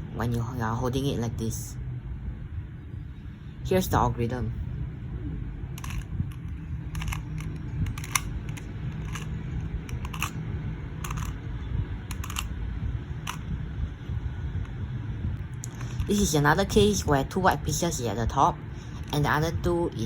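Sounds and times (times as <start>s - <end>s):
low hum: 0.0s - 20.0s
puzzle cube clicking: 5.8s - 10.4s, 11.0s - 11.4s, 12.1s - 12.5s, 13.2s - 13.4s, 15.6s - 16.2s.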